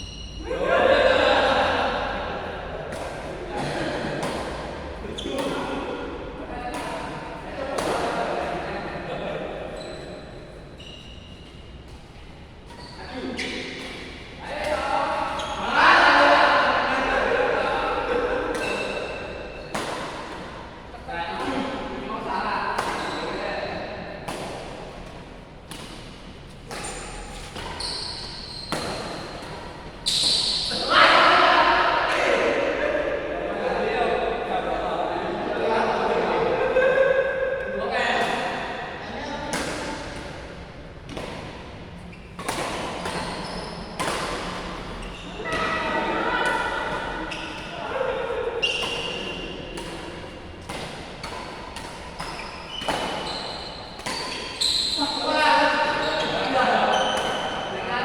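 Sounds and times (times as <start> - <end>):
players calling and shouting: 0.0 - 25.1, 26.7 - 58.0
badminton racket hitting shuttlecock: 42.3 - 47.7, 48.8 - 54.6.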